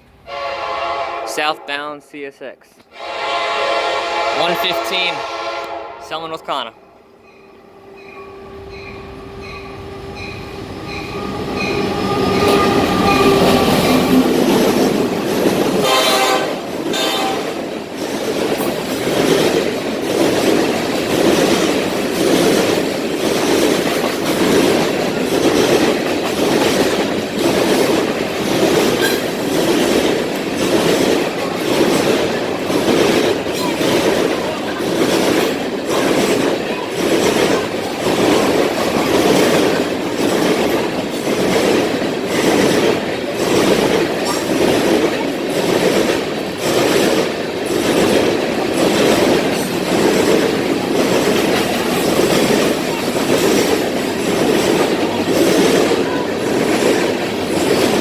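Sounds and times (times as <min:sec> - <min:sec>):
train horn: 0:00.2 - 0:02.0, 0:02.9 - 0:06.4, 0:07.5 - 0:14.2, 0:15.8 - 0:17.6
train wheels clattering on rails: 0:07.2 - 0:58.0.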